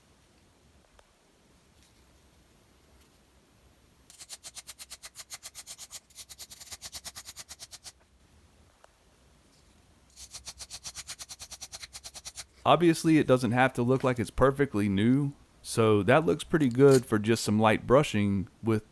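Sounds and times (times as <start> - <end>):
brass brush scrubbing metal file: 4.1 - 8.0, 10.1 - 12.7.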